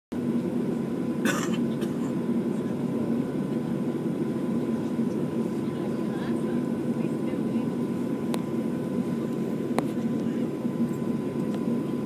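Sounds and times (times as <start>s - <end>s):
airplane cabin engine drone: 0.1s - 12.0s
cough-like sound: 1.2s - 2.2s.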